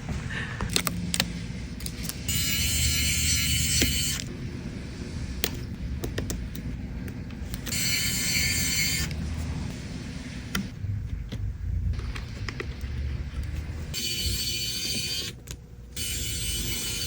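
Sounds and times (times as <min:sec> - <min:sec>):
steady low hum: 0:00.0 - 0:17.0
small electric motor whining: 0:02.3 - 0:04.3, 0:07.6 - 0:09.2, 0:13.9 - 0:15.4, 0:16.0 - 0:17.0.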